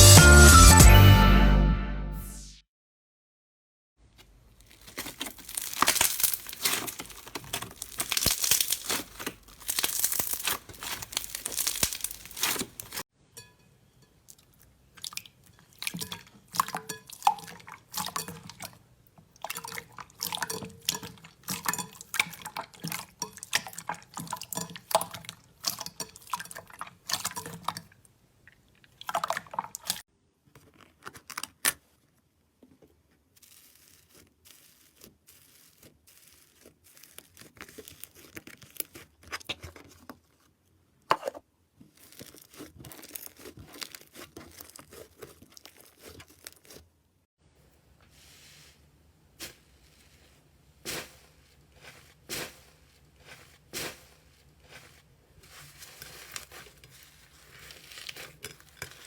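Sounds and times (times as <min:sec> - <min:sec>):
slime squished by hand: 0:04.2 - 0:13.0, 0:41.9 - 0:46.8.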